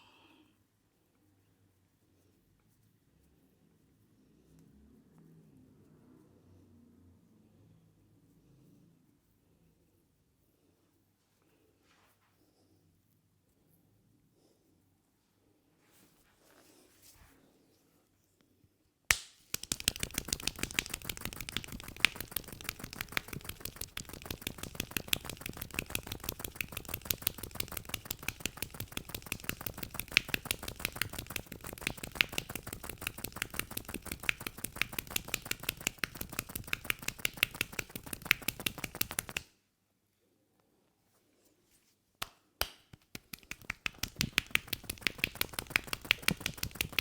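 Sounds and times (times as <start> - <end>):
hands tapping on a head: 19.1 - 39.5, 42.2 - 47.0.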